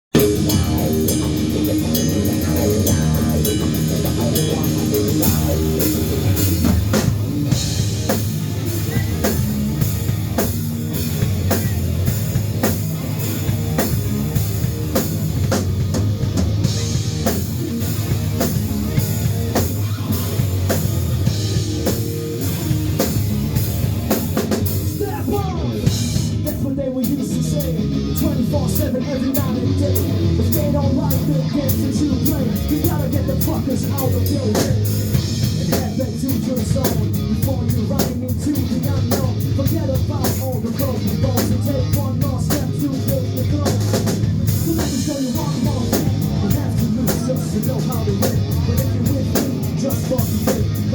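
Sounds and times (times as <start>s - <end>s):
rock music with drums and guitar: 0.1s - 50.9s.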